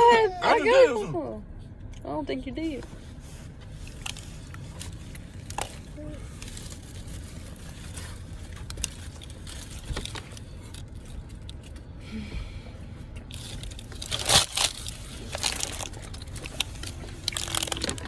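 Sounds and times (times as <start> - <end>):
paper wrapper crinkling: 13.4 - 18.0
chewing: 14.2 - 18.0.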